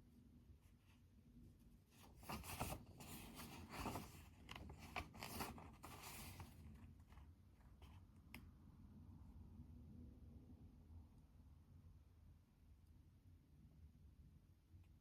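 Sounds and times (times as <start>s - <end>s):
rustling handling noise: 1.9s - 8.1s.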